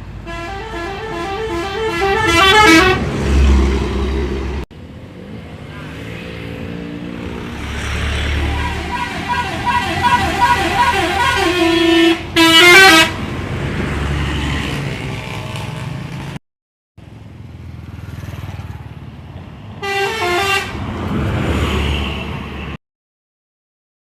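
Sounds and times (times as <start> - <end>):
bus engines rumbling: 0.0 - 16.4, 17.0 - 22.8
musical bus horns: 0.2 - 3.5, 8.3 - 13.3, 19.8 - 20.8.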